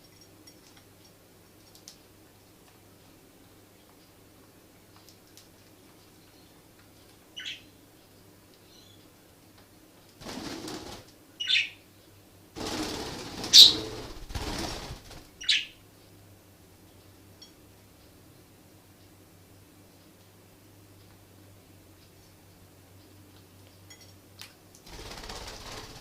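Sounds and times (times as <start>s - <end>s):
wing flapping: 10.2s - 11.1s, 12.6s - 15.5s, 24.8s - 26.0s
budgies chirping: 13.4s - 14.0s, 15.4s - 15.7s.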